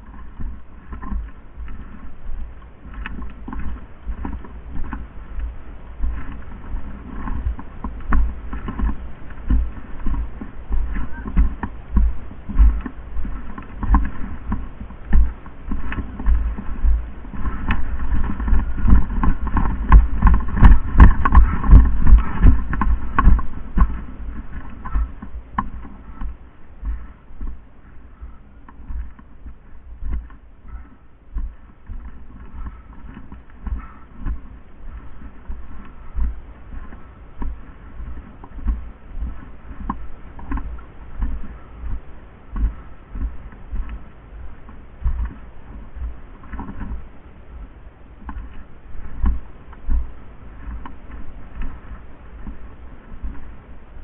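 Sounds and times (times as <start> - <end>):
footstep thumps and rattles: 0.0 - 53.7.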